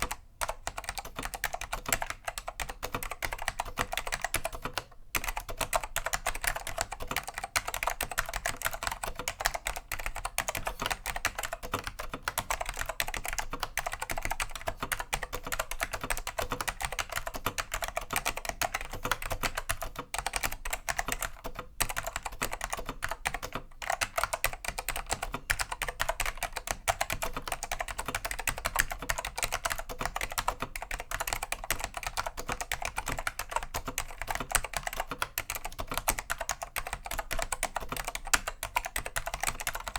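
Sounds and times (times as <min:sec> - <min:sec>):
clicky keyboard typing: 0:00.0 - 0:39.9.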